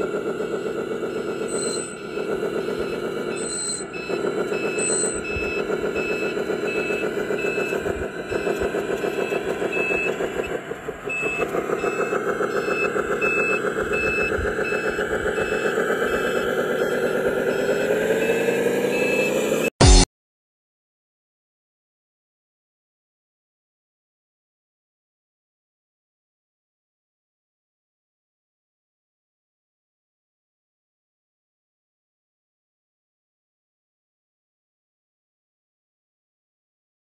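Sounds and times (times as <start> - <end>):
heavy truck engine running: 0.0 - 20.0
reversing alarm beeping: 0.0 - 20.0.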